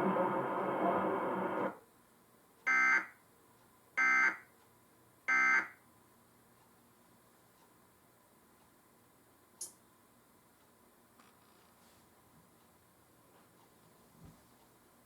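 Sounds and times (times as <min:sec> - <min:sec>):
steady noisy hum: 0:00.0 - 0:04.0.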